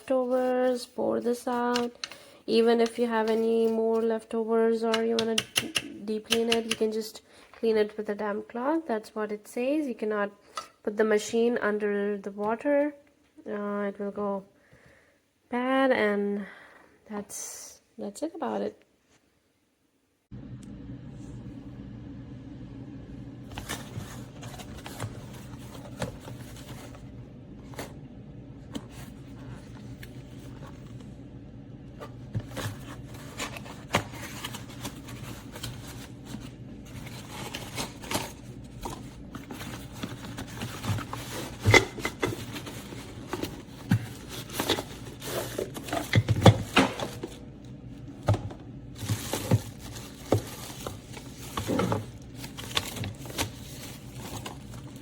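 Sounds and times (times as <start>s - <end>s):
objects clicking knocking and scraping: 5.0s - 6.9s
steady low hum: 20.3s - 55.0s.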